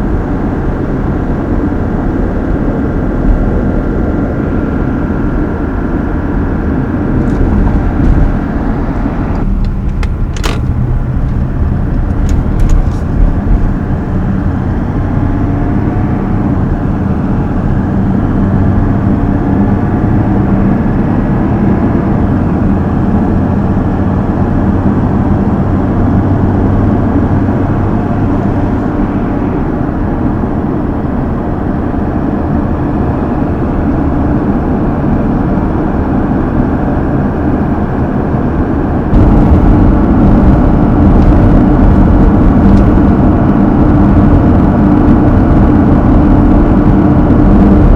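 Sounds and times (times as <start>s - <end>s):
diesel engine running: 0.0s - 47.9s
sharp clicks: 9.3s - 13.6s.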